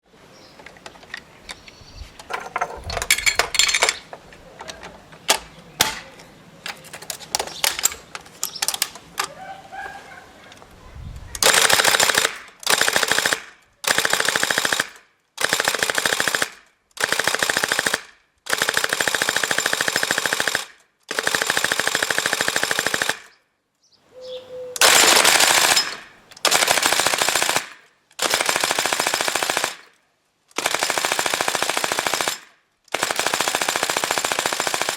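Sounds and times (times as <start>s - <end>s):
sharp mechanical clicks: 0.6s - 9.3s, 11.2s - 23.4s, 24.8s - 34.9s
toy machine gun full-auto bursts: 11.4s - 23.4s, 24.8s - 29.9s, 30.5s - 34.9s.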